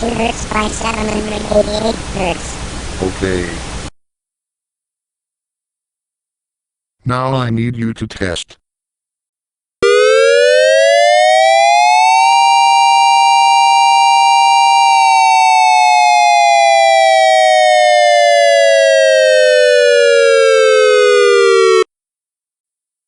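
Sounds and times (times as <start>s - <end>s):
dual-tone tornado siren: 9.8s - 21.9s.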